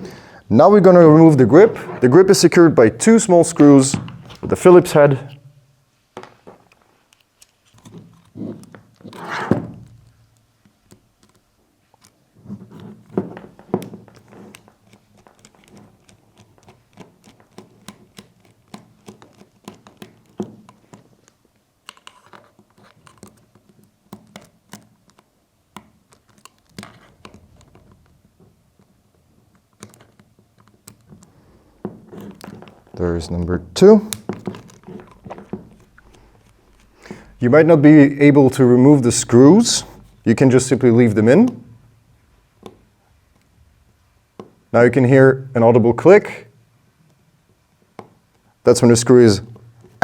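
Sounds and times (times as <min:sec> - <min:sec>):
screwdriver clicks and scrapes: 0:12.0 - 0:21.1, 0:21.8 - 0:25.2.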